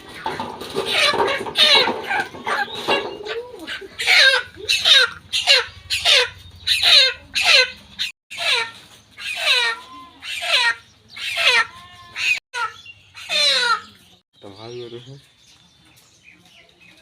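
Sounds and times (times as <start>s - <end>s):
chicken squawking loudly: 0.8s - 13.9s.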